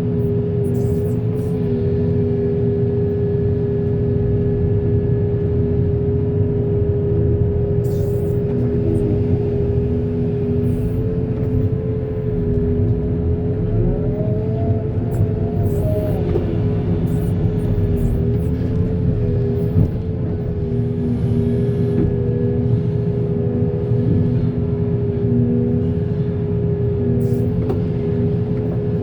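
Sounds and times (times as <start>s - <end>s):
diesel engine rumbling: 0.0s - 29.0s
rising machine whine: 7.6s - 20.6s.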